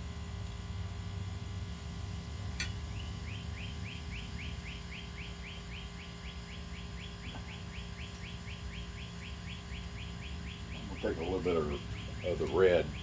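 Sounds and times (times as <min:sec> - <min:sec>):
low steady hum: 0:00.0 - 0:13.0
sharp click: 0:02.6 - 0:02.8.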